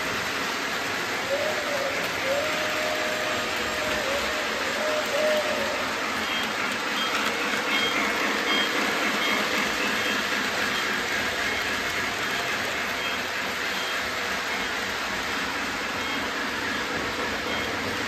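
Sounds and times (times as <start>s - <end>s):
train running: 0.0s - 18.0s.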